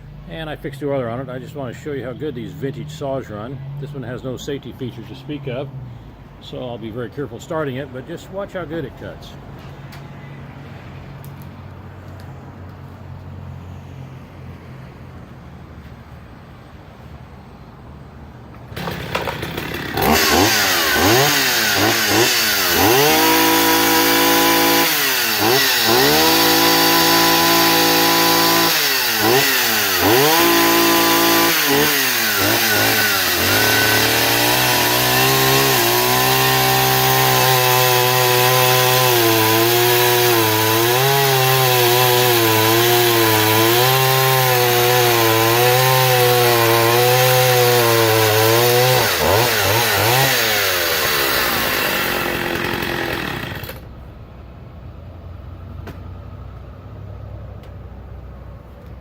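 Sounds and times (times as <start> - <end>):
chainsaw starting and revving: 18.6 - 53.9
chainsaw cutting firewood: 18.7 - 53.9.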